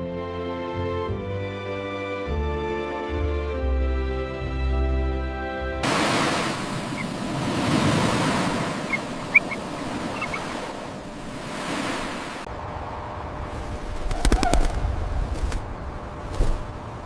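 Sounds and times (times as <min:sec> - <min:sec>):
rush of noise: 0:05.8 - 0:17.0
high bird chirps: 0:08.8 - 0:10.6.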